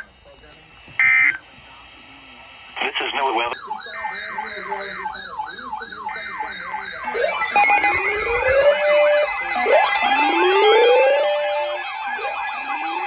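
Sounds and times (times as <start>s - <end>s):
steady high siren tones: 0.0s - 2.7s, 3.4s - 13.0s
siren yelp: 3.5s - 13.0s
siren wail: 3.6s - 13.0s.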